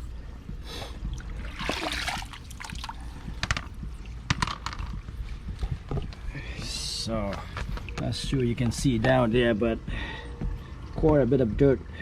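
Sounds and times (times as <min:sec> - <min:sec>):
water splashing and trickling: 0:01.0 - 0:09.8
plastic knocks: 0:03.3 - 0:05.1.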